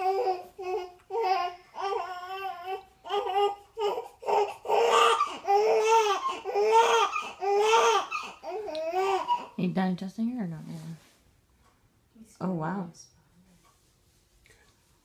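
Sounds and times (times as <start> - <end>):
newborn baby crying: 0.0 - 9.6.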